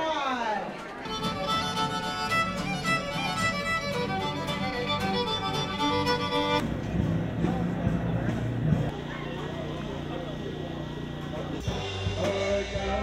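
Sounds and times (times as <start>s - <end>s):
fiddle music: 1.1s - 6.7s.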